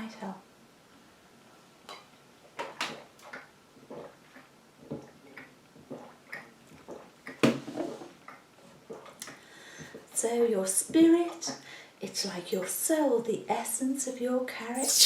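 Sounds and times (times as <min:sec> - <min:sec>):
sips and swallows of water: 0:14.8 - 0:15.0.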